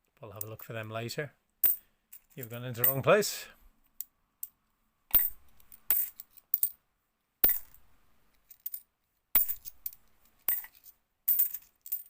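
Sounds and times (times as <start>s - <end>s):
coins clinking: 9.4s - 12.0s.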